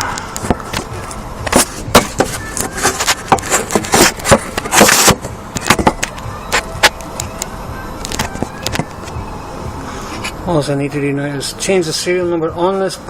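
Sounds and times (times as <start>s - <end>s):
sharp handling clicks and knocks: 0.3s - 9.0s.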